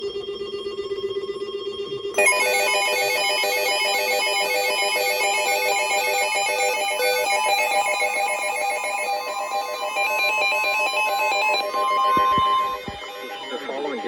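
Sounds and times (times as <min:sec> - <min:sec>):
warbling digital data tones: 0:09.0 - 0:14.0.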